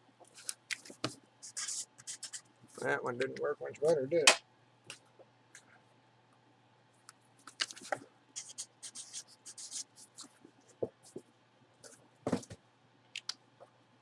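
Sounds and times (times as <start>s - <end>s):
marker scratching on paper: 1.4s - 2.5s, 8.4s - 10.4s.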